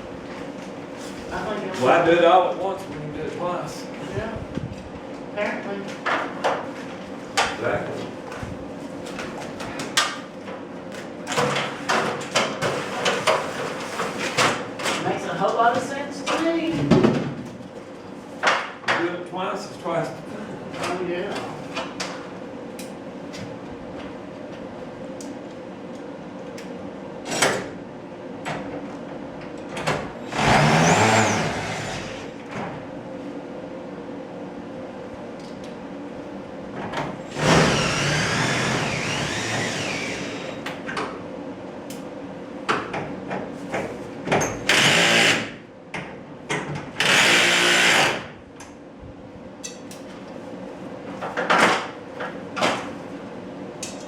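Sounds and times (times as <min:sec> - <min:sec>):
power drill driving screws: 0:30.3 - 0:32.3, 0:37.3 - 0:40.6, 0:44.7 - 0:45.5, 0:47.0 - 0:48.2.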